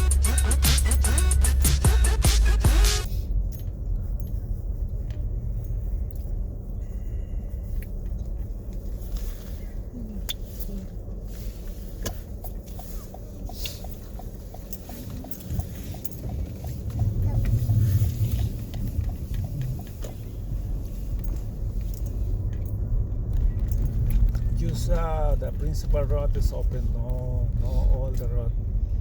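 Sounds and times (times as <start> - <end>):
car engine and tyre rumble: 0.0 - 29.0.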